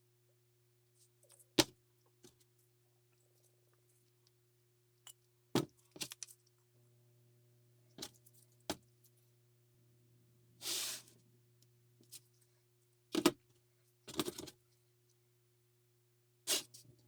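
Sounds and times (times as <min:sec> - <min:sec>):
short scraping hiss: 0:10.6 - 0:11.1.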